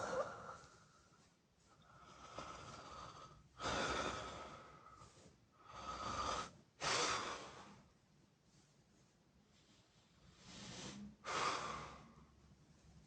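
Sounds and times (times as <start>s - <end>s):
person snoring: 0.0s - 0.6s.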